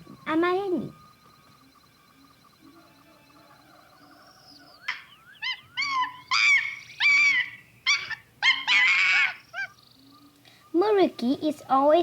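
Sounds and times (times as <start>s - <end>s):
animal yelping calls: 3.5s - 10.0s.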